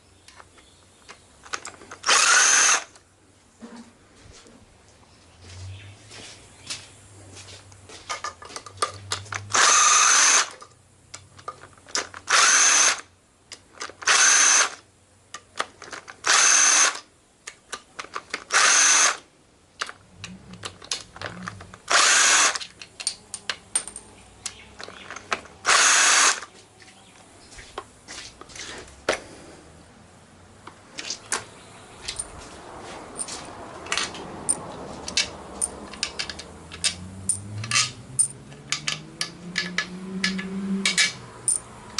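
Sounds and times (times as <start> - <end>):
metallic clicks of parts handled: 0.3 - 3.0, 7.7 - 9.7, 10.3 - 14.1, 15.3 - 18.6, 19.8 - 25.6, 32.1 - 32.5, 33.1 - 41.9
power drill bursts: 2.0 - 2.9, 9.5 - 10.6, 12.3 - 13.1, 14.0 - 14.8, 16.2 - 17.0, 18.5 - 19.2, 21.9 - 22.6, 25.6 - 26.5.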